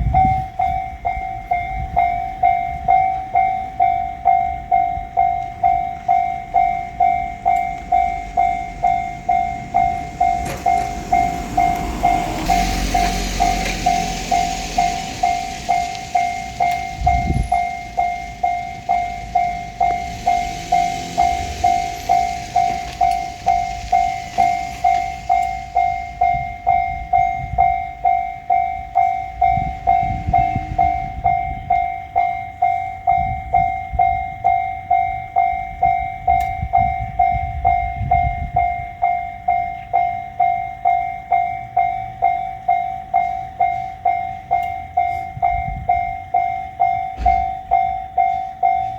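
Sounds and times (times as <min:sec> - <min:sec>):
low rumbling: 0:00.0 - 0:39.1
level-crossing alarm bell ringing: 0:00.0 - 0:48.9
passing train running noise: 0:00.0 - 0:48.9.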